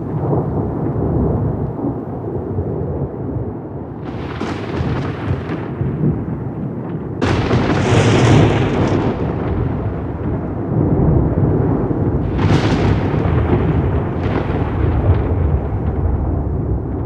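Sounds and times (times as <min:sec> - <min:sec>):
rolling thunder: 0:00.0 - 0:17.0
sharp thunder crack: 0:04.0 - 0:17.0.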